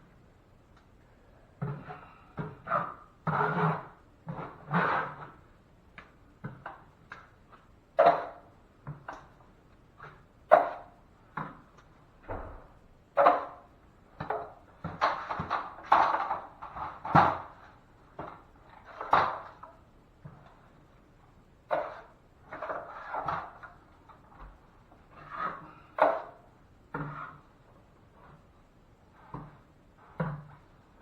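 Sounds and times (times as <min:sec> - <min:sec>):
drywall knife scraping and knocking: 0:01.6 - 0:05.4, 0:14.2 - 0:20.5, 0:21.7 - 0:24.5, 0:25.1 - 0:28.5, 0:29.1 - 0:30.7.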